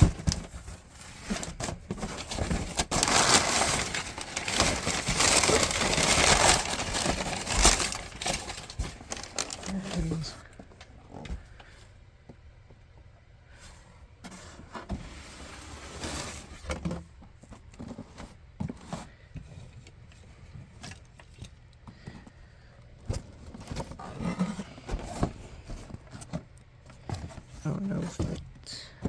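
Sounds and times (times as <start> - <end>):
cardboard box rustling and scraping: 0.0 - 10.4, 13.6 - 19.8, 23.0 - 28.4.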